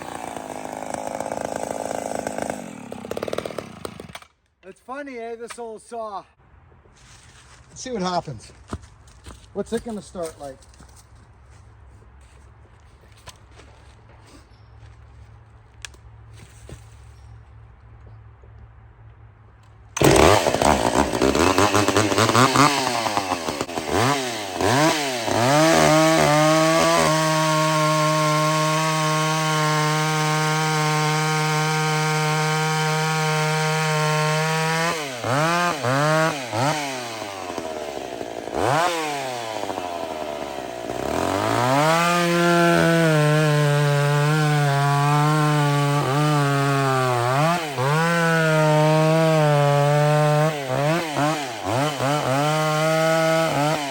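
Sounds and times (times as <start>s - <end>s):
chainsaw engine revving: 0.0s - 4.3s, 20.0s - 53.9s.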